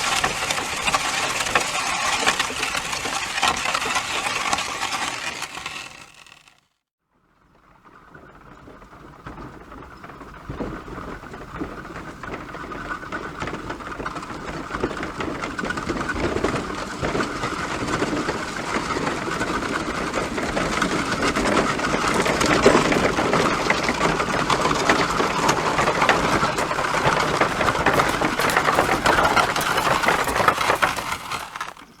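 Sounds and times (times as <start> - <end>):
horse hooves clattering: 0.0 - 5.8, 9.4 - 32.0.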